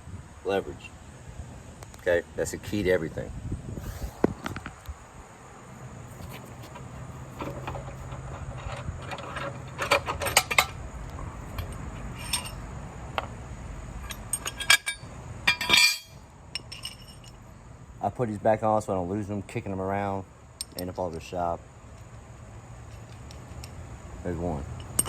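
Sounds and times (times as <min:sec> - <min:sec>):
metal parts clinking: 0:07.4 - 0:10.8, 0:11.4 - 0:12.6, 0:14.0 - 0:17.4, 0:22.9 - 0:23.8, 0:24.7 - 0:25.0.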